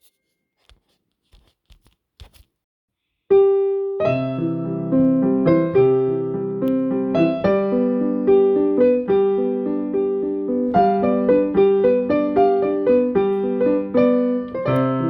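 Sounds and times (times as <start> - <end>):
gentle piano melody: 3.3 - 15.0.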